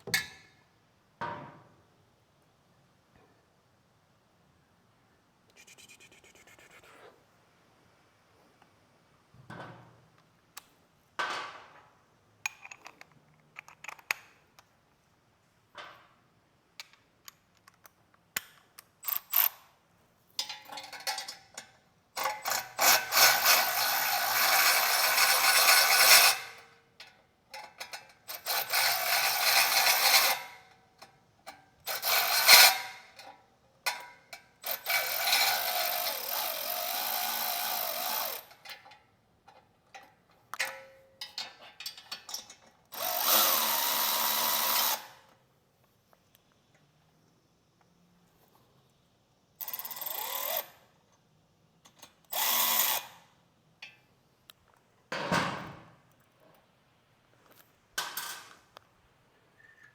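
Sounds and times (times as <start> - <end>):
tools clicking and clanking: 12.5 - 14.7, 20.4 - 23.5, 27.0 - 30.3, 38.2 - 43.1
ratchet wrench ratcheting: 34.6 - 38.6, 49.6 - 50.8.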